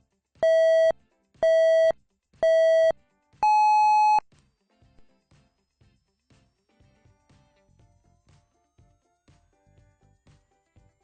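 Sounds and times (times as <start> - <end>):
electronic countdown beeps: 0.4 - 4.2.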